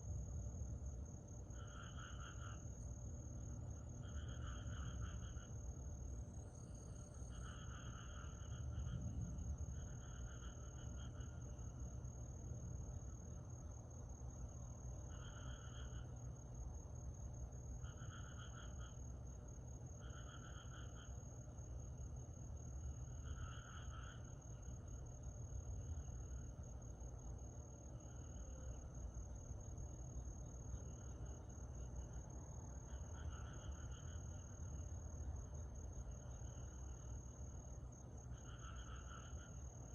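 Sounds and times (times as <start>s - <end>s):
lower insect chirping call: 0.1s - 39.9s
high-pitched insect trill: 3.5s - 12.0s, 13.0s - 16.5s, 17.6s - 21.8s, 27.8s - 39.9s.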